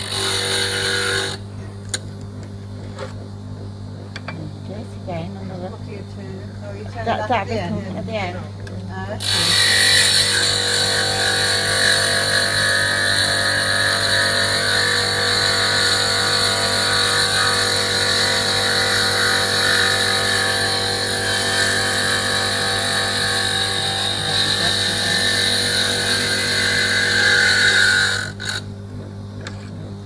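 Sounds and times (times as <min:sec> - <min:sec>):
glass grinder grinding glass: 0:00.0 - 0:02.0, 0:09.1 - 0:28.7, 0:29.4 - 0:29.9
motor hum: 0:00.0 - 0:30.0.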